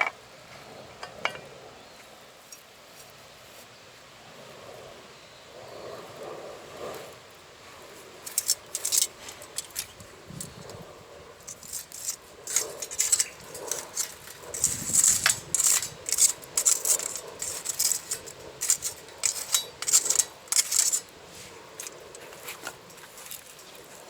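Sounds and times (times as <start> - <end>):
metal objects clinking and rattling: 8.2 - 10.8, 11.4 - 21.1, 21.8 - 23.8.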